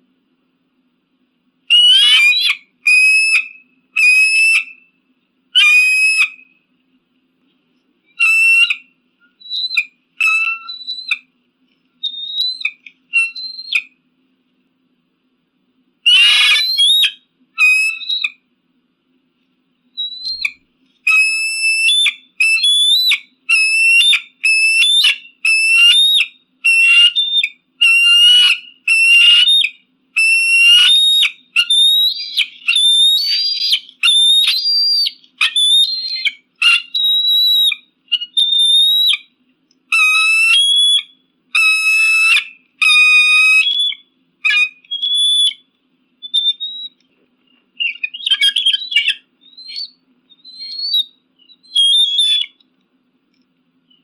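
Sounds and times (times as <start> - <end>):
eagle whistled calls: 1.7 - 4.9, 5.6 - 6.6, 8.1 - 11.3, 12.0 - 14.0, 16.0 - 18.4, 20.0 - 47.1, 47.8 - 52.6.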